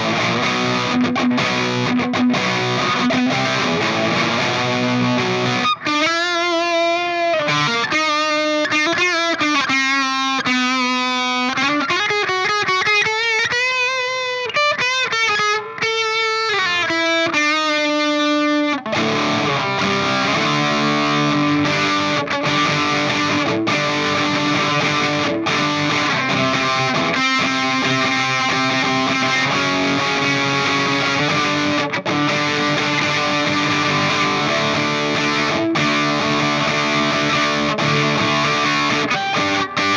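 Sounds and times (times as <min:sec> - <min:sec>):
distorted electric guitar: 0:00.0 - 0:39.9.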